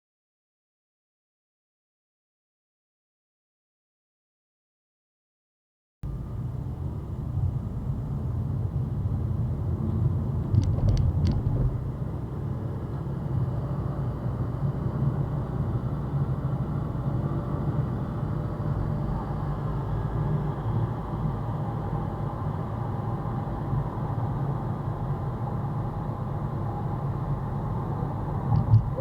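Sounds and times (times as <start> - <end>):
road traffic rumble: 6.0 - 29.0.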